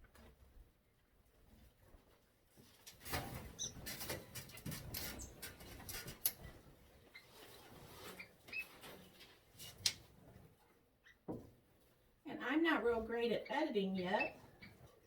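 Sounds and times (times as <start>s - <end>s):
decorations rustling and clicking: 1.7s - 10.3s.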